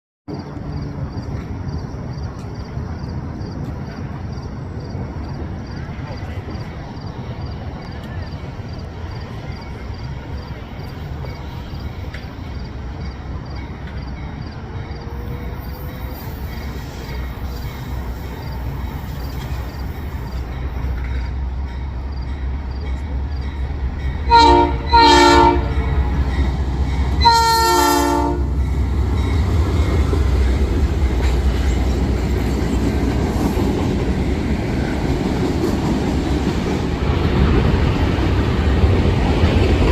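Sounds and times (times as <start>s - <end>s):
diesel locomotive rumble: 0.3s - 39.9s
passing train clatter: 0.3s - 39.9s
train chord horn blasts: 24.2s - 29.4s.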